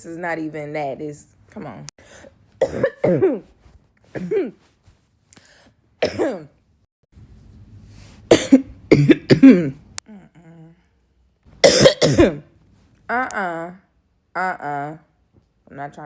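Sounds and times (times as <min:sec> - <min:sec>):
woman coughing: 0:02.6 - 0:04.7, 0:06.0 - 0:06.6, 0:08.3 - 0:09.8, 0:11.6 - 0:12.5.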